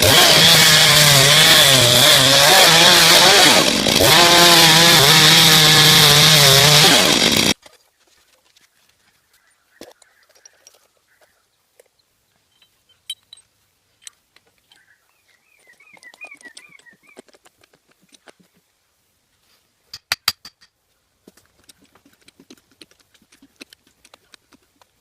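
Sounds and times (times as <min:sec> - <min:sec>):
bird warbling call: 0:14.7 - 0:17.2.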